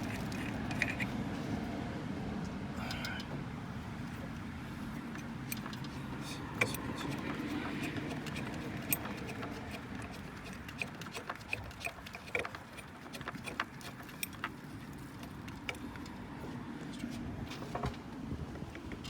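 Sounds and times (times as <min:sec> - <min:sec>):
metallic clicks of tools and bolts: 0:05.2 - 0:14.5.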